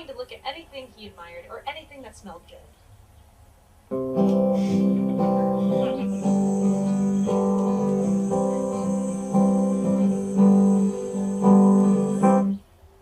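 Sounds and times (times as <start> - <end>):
guitar strumming chords: 3.9 - 12.6.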